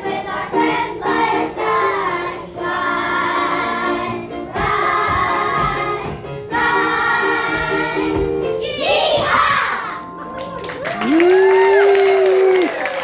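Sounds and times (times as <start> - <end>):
children singing together: 0.0 - 10.1
instrumental accompaniment: 0.0 - 11.0.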